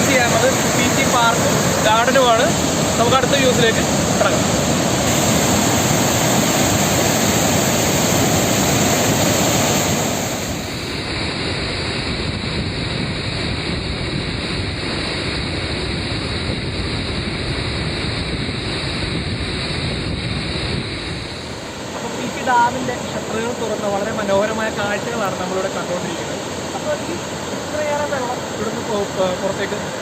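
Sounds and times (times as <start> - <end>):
water rushing through spillway: 0.0 - 11.9, 21.0 - 30.0.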